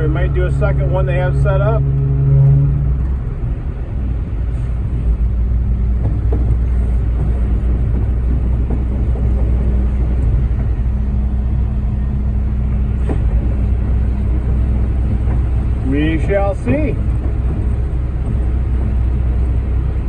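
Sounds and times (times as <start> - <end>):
diesel truck engine running: 0.0 - 20.0.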